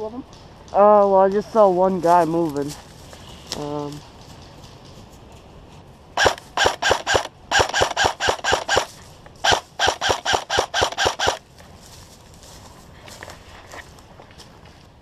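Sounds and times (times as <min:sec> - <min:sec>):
airsoft rifle shots: 0:06.2 - 0:11.4.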